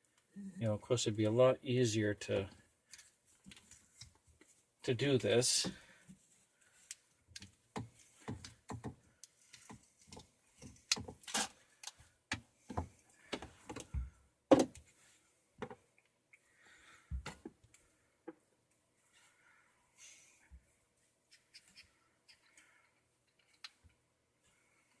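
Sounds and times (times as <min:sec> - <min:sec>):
plastic pipe fittings clicking: 0:08.2 - 0:13.9, 0:21.3 - 0:24.0.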